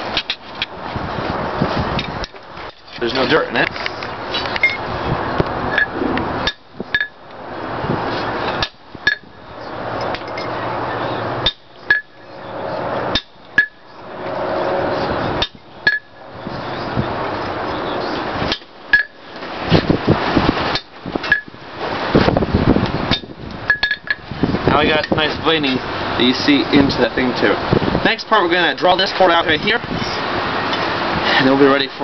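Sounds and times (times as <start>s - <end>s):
hammer striking chisel on steel: 11.4s - 12.2s, 13.1s - 13.8s.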